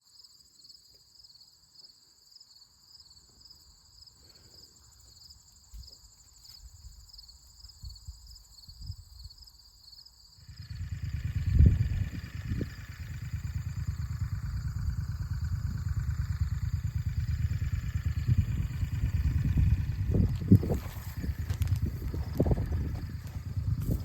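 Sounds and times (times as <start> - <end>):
insects chirping trill: 0.0 - 24.0
wind rumble on microphone: 7.8 - 9.4, 10.5 - 24.0.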